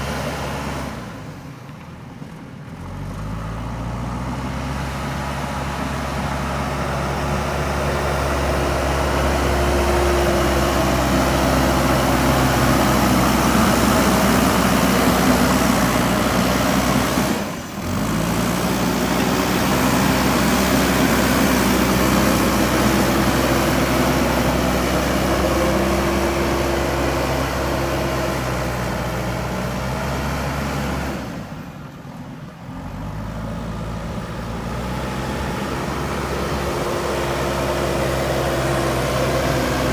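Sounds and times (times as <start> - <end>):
diesel engine running under load: 0.0 - 39.9.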